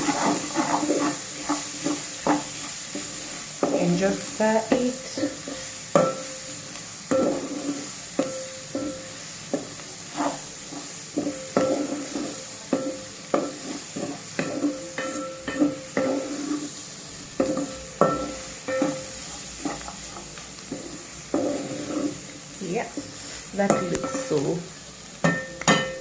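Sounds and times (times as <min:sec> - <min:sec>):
faint sizzle: 0:00.0 - 0:26.0
spoon scraping in a pan: 0:00.0 - 0:26.0
spoon knocking ringing pan: 0:04.6 - 0:06.5, 0:14.4 - 0:16.2, 0:17.4 - 0:19.1, 0:23.6 - 0:24.5, 0:25.2 - 0:26.0.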